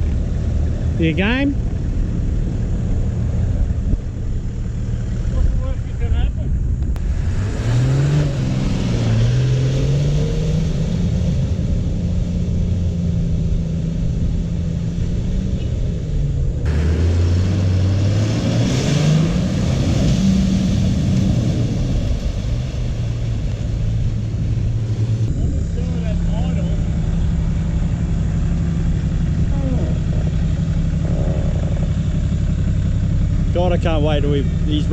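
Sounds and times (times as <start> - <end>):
engine revving under load: 7.0 - 34.9.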